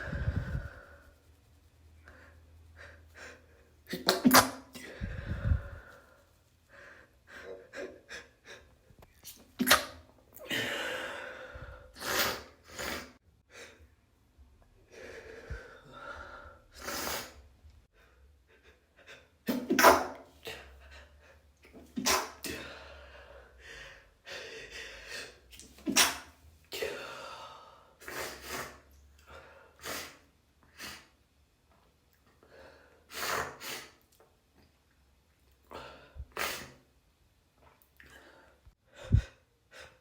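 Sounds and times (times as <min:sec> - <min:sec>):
gasping in-breaths: 0:00.0 - 0:01.1, 0:04.8 - 0:08.7, 0:10.4 - 0:12.0, 0:38.0 - 0:40.0
person sneezing: 0:19.5 - 0:20.6, 0:22.0 - 0:22.6, 0:25.8 - 0:26.9.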